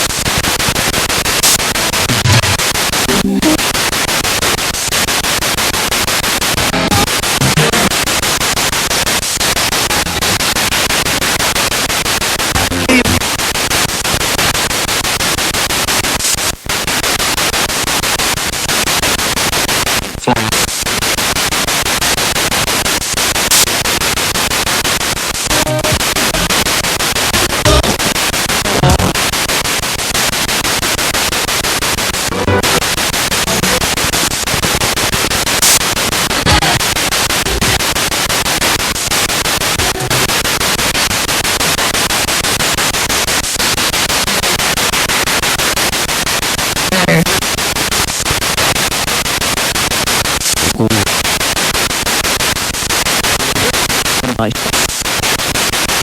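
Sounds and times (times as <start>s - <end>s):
pulsing radio static: 0.0s - 56.0s
radio music snatches: 0.0s - 56.0s
broadcast voices: 2.1s - 3.8s, 20.2s - 20.8s, 50.4s - 51.2s, 53.4s - 54.9s.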